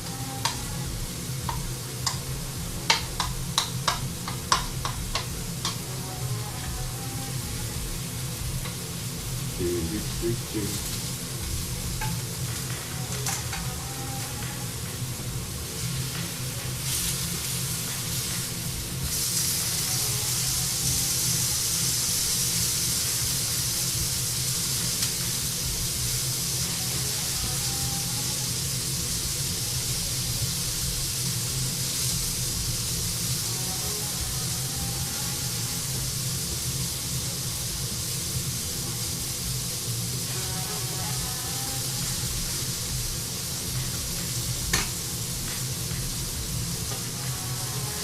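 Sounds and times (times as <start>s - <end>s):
meat sizzling in a pan: 0.0s - 48.0s
low hum: 4.8s - 15.5s.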